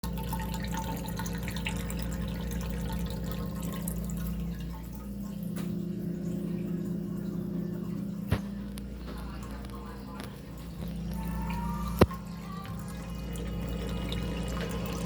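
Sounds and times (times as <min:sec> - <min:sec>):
steady low hum: 0:00.0 - 0:15.0
water gurgling down sink drain: 0:00.0 - 0:15.0.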